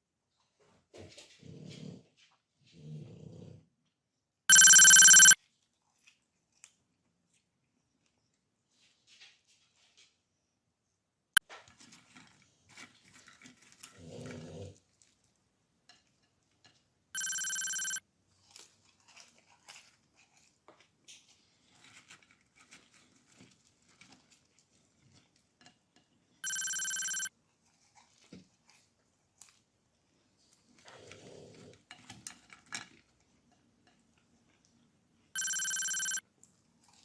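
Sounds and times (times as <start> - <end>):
electronic beep: 4.5 - 5.4, 17.2 - 18.0, 26.4 - 27.3, 35.4 - 36.2
eating and handling noises: 18.4 - 25.5.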